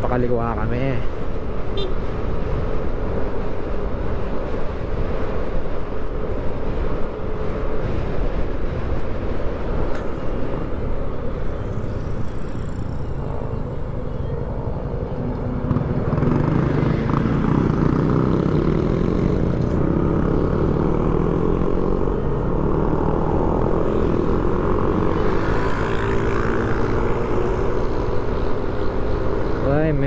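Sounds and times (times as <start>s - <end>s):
scooter engine running: 9.5s - 27.8s.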